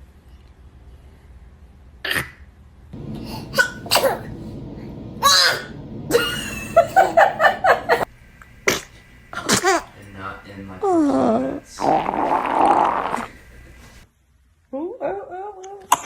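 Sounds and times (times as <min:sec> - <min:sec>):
baby sneezing: 0:03.2 - 0:04.4
baby vocal sounds: 0:03.2 - 0:04.4, 0:05.2 - 0:05.9.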